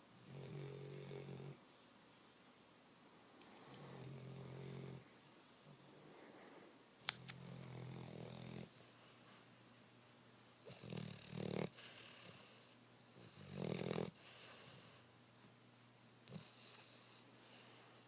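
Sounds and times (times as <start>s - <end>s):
dog snoring: 0.2s - 1.6s, 3.5s - 5.1s, 7.3s - 8.8s, 10.6s - 15.0s, 16.3s - 18.0s.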